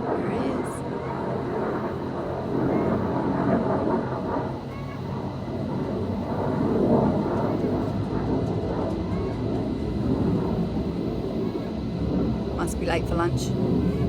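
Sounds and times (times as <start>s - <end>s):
jet aircraft flying overhead: 0.0s - 14.0s.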